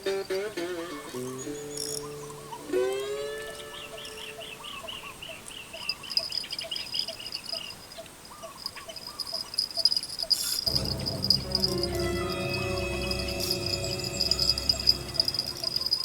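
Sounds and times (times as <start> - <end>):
insect chirps: 1.4 - 2.6, 3.4 - 16.0
low pulsing insect call: 1.4 - 16.0
insect high trill: 5.7 - 16.0
music with deep bass: 10.7 - 16.0.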